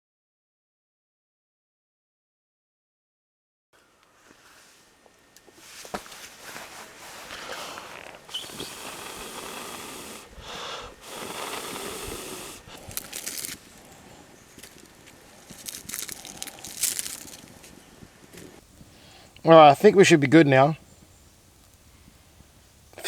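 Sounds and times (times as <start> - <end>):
fire crackling and snapping: 5.1 - 19.5, 20.9 - 23.0
breaths blown onto fire: 5.5 - 19.4.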